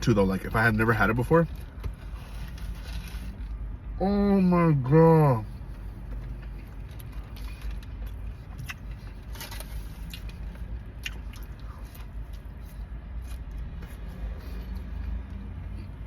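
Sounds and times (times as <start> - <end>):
person chewing food: 5.6 - 16.0
crisp crunches and mouth clicks: 6.1 - 14.0.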